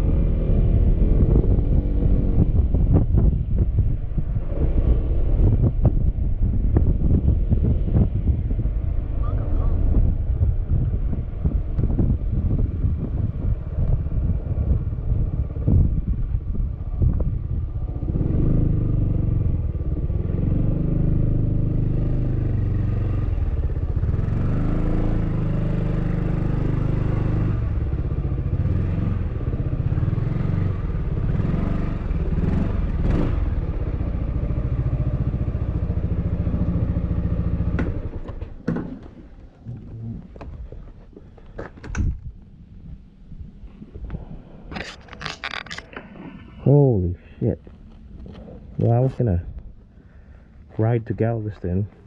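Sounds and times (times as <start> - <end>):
wind on microphone: 0.0 - 20.8, 39.5 - 46.7.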